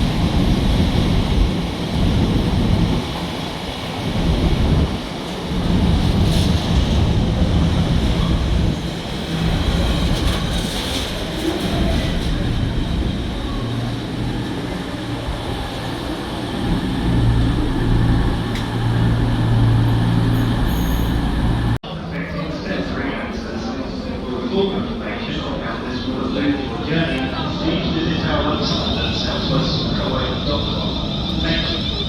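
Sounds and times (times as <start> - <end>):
train rumble and hum: 0.0 - 32.0.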